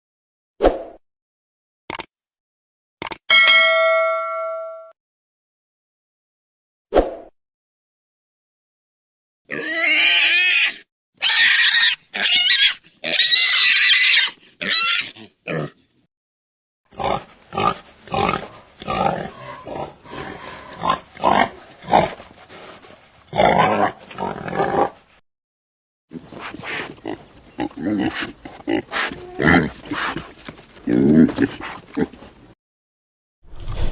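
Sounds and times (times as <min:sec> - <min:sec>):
wild boar squealing: 0:09.5 - 0:15.8
wild boar grunting: 0:16.9 - 0:22.2, 0:26.1 - 0:32.4.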